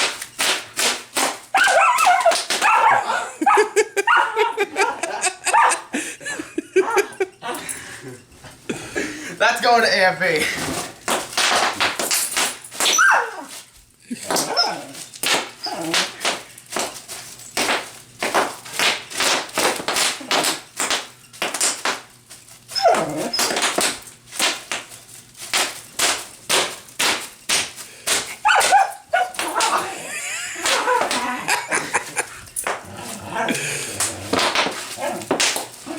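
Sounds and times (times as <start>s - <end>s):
dog barking: 1.6s - 5.9s, 12.9s - 13.5s, 14.3s - 15.0s, 22.8s - 23.5s, 28.4s - 30.0s
dog growling and whining: 12.9s - 13.5s, 14.1s - 16.2s, 22.7s - 23.7s, 28.4s - 30.1s, 30.8s - 35.9s.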